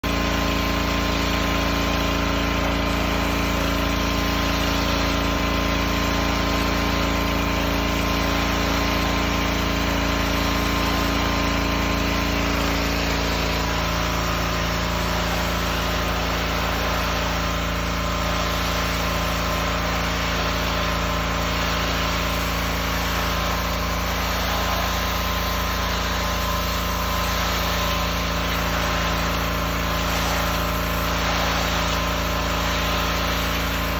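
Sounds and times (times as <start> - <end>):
pressure washer engine running: 0.0 - 33.9
water spray hiss: 8.0 - 33.9.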